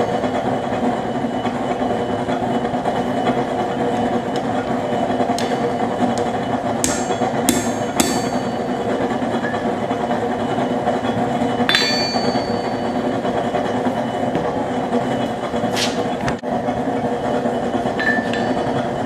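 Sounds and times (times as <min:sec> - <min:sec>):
forge burner roaring: 0:00.0 - 0:19.0
ringing metal clanks: 0:06.8 - 0:09.8, 0:10.4 - 0:15.4, 0:18.0 - 0:18.8.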